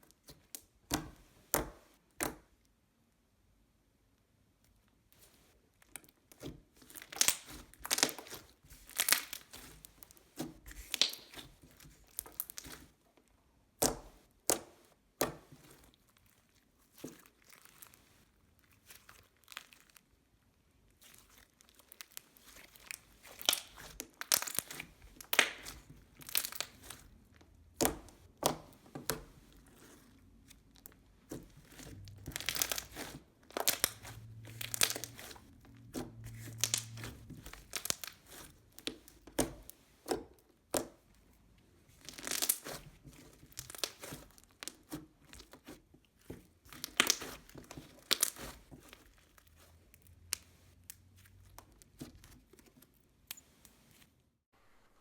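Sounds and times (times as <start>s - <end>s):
packaging tearing and crinkling: 32.0s - 35.5s, 46.8s - 48.6s.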